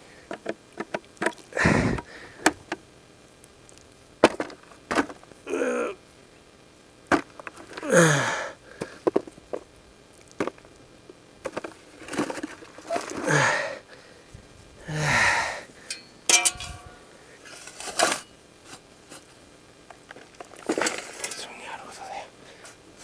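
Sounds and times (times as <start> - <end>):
man's hoarse breathy vocal sounds: 1.5 - 2.3, 14.8 - 15.7.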